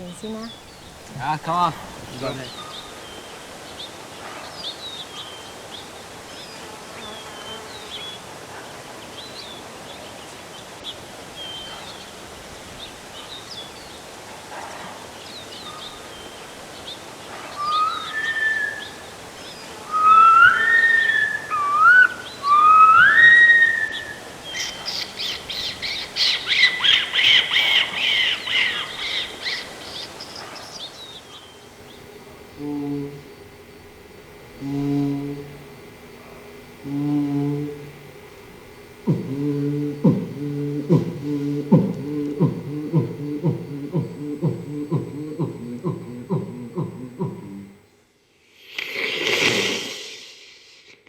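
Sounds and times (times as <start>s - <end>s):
rapid chattering bird calls: 0.0s - 2.8s, 19.4s - 32.3s
birds chirping: 0.0s - 3.3s, 15.8s - 47.8s.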